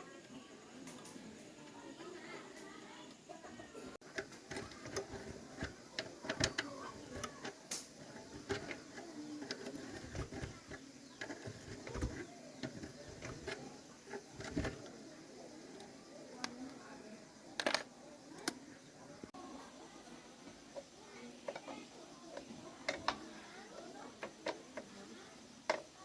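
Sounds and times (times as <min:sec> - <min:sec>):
hand tools and metal parts clicking: 0:04.0 - 0:14.9, 0:17.6 - 0:18.6.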